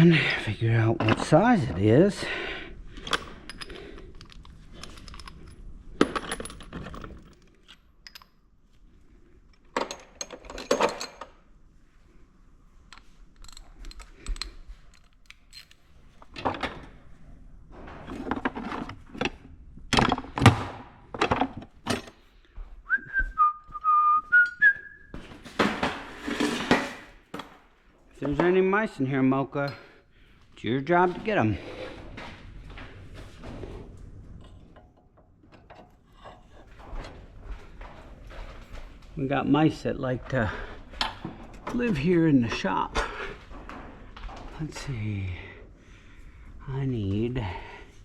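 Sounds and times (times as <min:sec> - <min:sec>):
metal tools clinking: 0:03.0 - 0:08.4, 0:09.6 - 0:11.4, 0:12.9 - 0:16.9
man whistling: 0:22.8 - 0:25.2.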